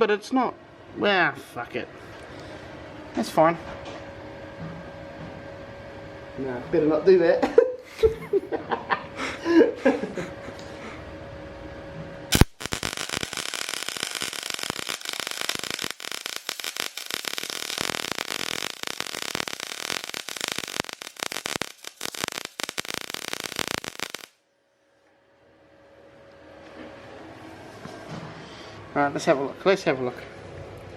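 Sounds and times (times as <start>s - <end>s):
welding arc crackling: 12.3s - 24.4s.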